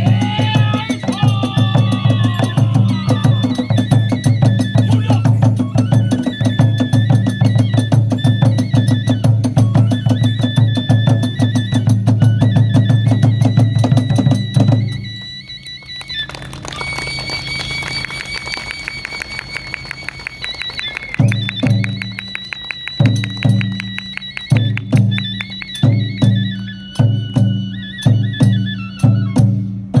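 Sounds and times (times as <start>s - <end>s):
fast dense drumming: 0.0s - 5.7s
high flute melody: 0.0s - 30.0s.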